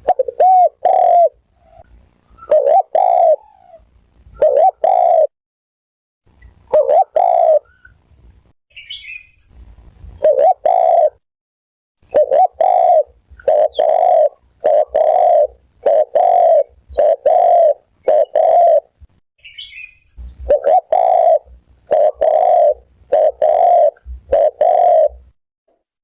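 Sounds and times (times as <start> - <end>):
dove cooing: 0.0 - 1.8, 2.4 - 5.3, 6.7 - 7.8, 10.2 - 11.2, 12.0 - 19.0, 20.4 - 25.4.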